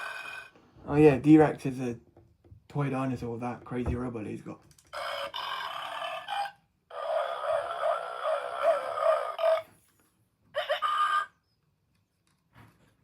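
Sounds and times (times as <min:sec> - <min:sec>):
toy electronic sound effects: 0:00.0 - 0:00.5, 0:05.0 - 0:09.7, 0:10.6 - 0:11.4.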